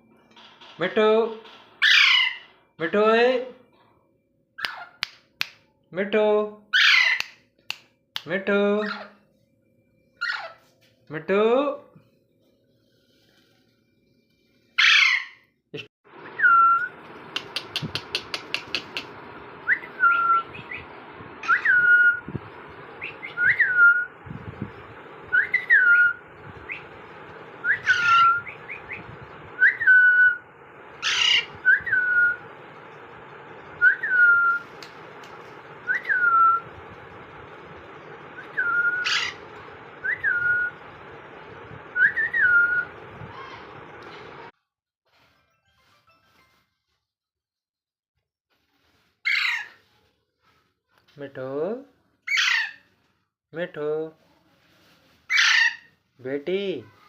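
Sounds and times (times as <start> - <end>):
parrot squawks: 1.8 - 2.6, 4.6 - 5.0, 6.7 - 7.4, 10.2 - 10.6, 14.8 - 15.4, 27.6 - 28.8, 31.0 - 32.4, 38.5 - 40.7, 49.2 - 49.8, 52.3 - 52.9, 55.3 - 56.0
parrot whistling: 16.2 - 24.2, 25.0 - 44.5.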